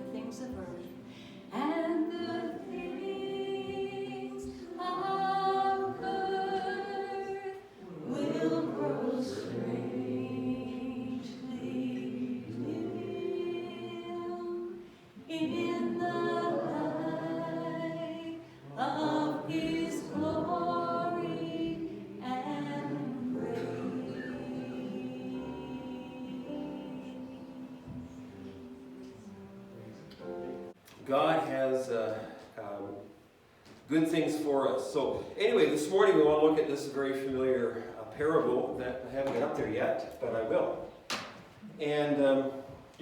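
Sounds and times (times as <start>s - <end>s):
singers breathing: 1.0s - 1.5s
group of voices singing: 1.6s - 30.7s.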